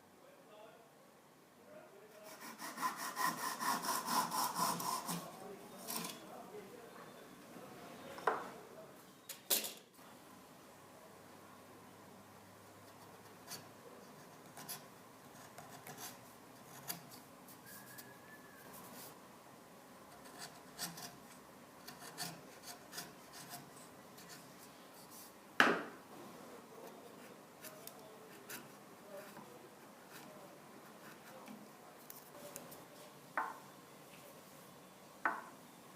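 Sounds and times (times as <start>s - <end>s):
hand tool scraping wood: 2.2s - 6.2s, 20.2s - 21.2s, 21.8s - 24.6s
sharp knock: 25.6s - 26.0s.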